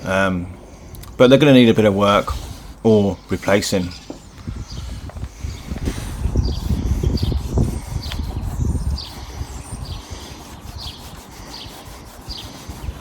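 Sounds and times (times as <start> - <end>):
small bird chirping: 3.3 - 13.0.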